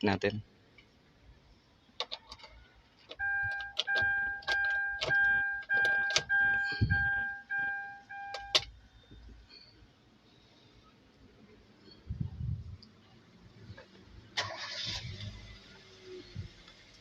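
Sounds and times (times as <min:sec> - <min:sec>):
key clicking in ignition lock: 0:02.0 - 0:06.3, 0:08.3 - 0:08.7
car warning chime beeping: 0:03.1 - 0:08.7.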